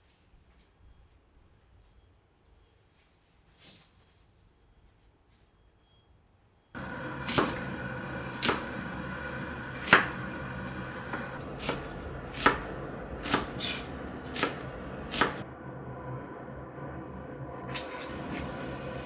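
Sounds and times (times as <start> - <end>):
steady low hum: 6.8 - 19.0
knife chopping on cutting board: 7.0 - 8.8, 9.8 - 10.3, 11.1 - 15.4.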